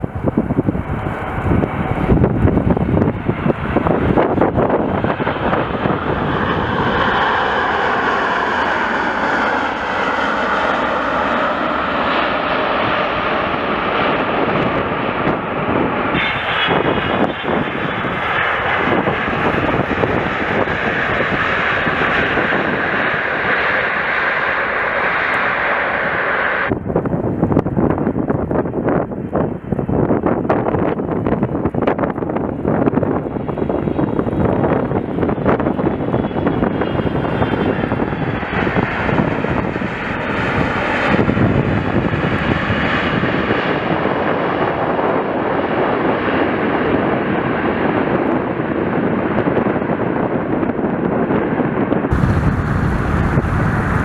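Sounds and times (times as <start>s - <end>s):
jet engines whining: 0.0s - 27.1s, 52.1s - 54.0s
wind rumble on microphone: 0.0s - 54.0s.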